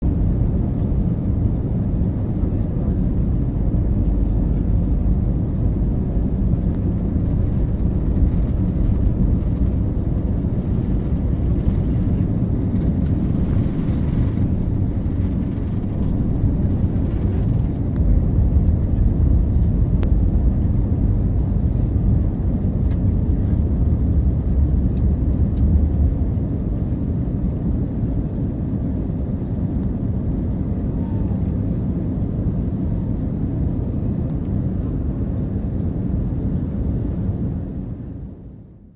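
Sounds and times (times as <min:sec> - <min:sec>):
jet plane rumble: 0:00.0 - 0:38.9.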